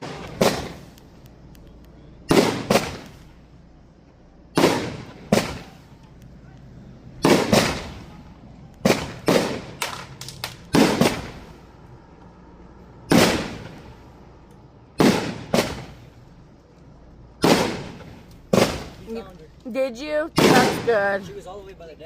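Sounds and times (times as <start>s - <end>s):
fireworks bangs: 0.0s - 1.2s, 2.2s - 3.5s, 4.5s - 11.8s, 13.0s - 14.2s, 15.0s - 16.2s, 17.4s - 19.2s, 20.0s - 21.3s.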